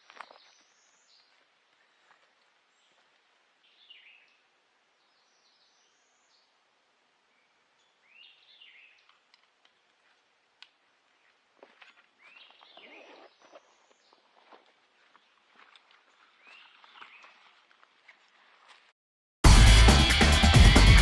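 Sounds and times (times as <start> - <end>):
faint birdsong: 0.0 - 10.0, 10.9 - 17.6.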